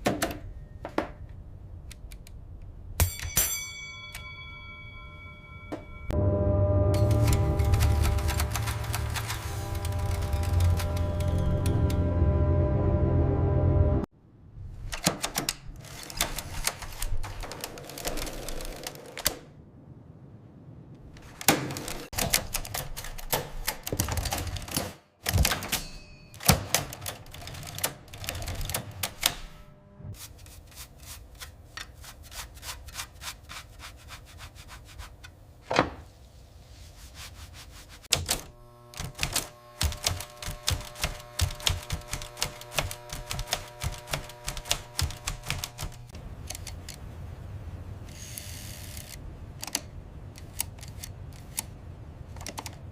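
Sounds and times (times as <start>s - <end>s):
manual typewriter typing: 7.0s - 12.0s, 14.9s - 19.4s, 21.3s - 29.6s, 38.1s - 46.9s.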